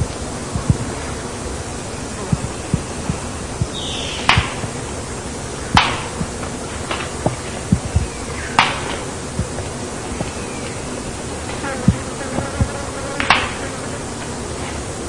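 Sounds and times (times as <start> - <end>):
background hiss: 0.0 - 15.0
bird bill clacks: 2.3 - 4.8, 5.7 - 10.8.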